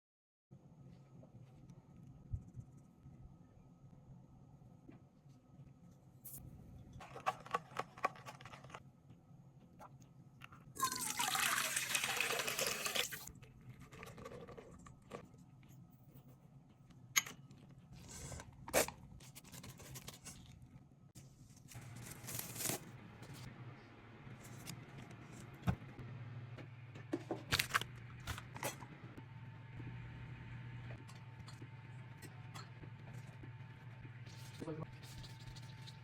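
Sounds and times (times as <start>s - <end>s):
liquid pouring: 10.8s - 13.3s.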